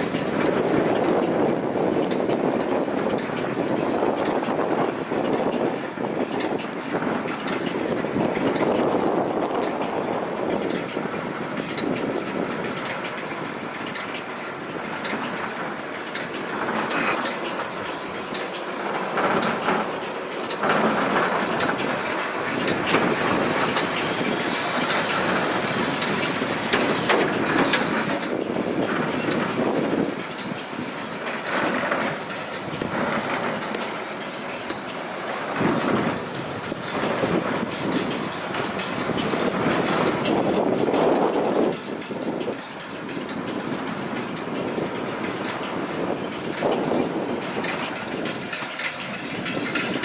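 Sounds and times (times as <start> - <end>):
baler mechanical clatter: 0.0 - 50.0.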